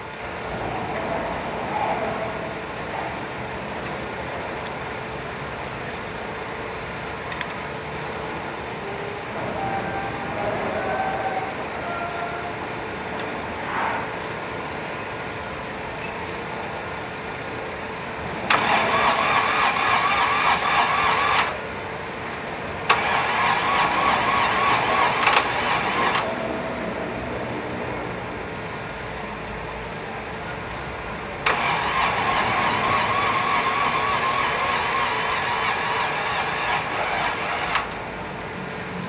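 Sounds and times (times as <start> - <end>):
starter cranking diesel engine: 18.4 - 21.7, 22.8 - 26.8, 31.4 - 38.3.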